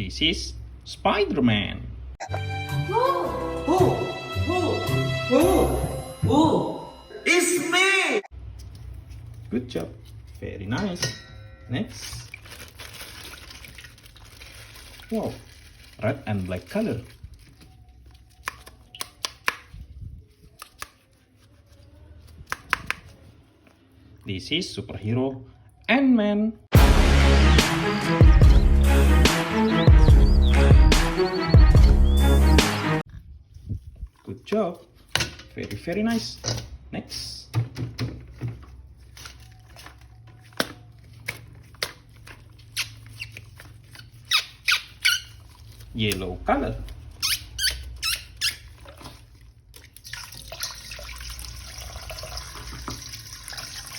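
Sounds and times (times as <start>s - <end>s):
plastic package clicks and crinkles: 12.1s - 19.7s.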